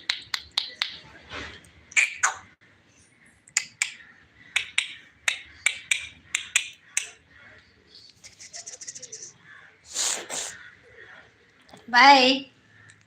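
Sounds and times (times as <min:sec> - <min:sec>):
sharp clicks: 0:04.6 - 0:07.2.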